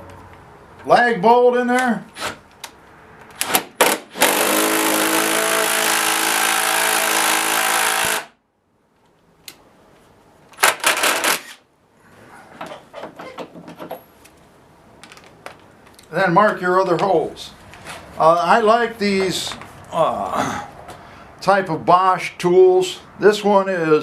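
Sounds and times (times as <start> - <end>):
impact driver hammering: 3.4 - 8.3, 10.6 - 11.5.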